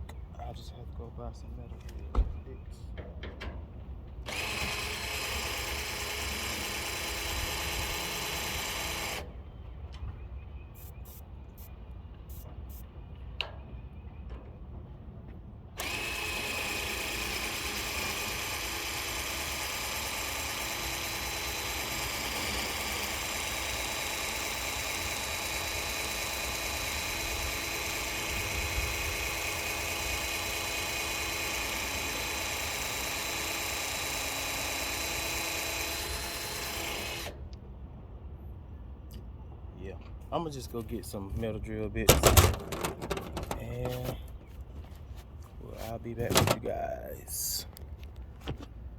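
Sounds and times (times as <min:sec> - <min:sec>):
power drill whining: 0:04.2 - 0:09.3, 0:15.8 - 0:37.4.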